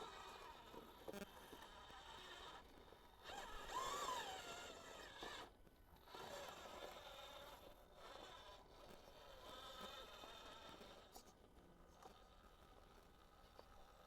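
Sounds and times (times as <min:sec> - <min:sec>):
electric motor and gears whining: 0:00.0 - 0:11.2.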